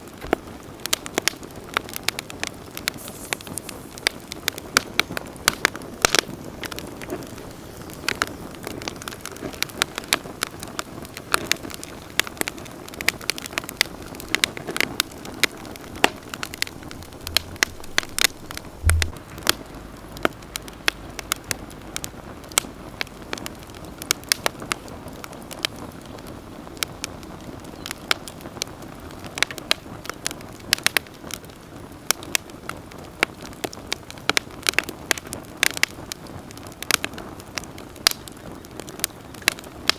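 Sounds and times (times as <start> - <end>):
campfire crackling and popping: 0.0 - 39.9
low hiss of burning: 0.0 - 39.9
low thump: 16.7 - 20.6.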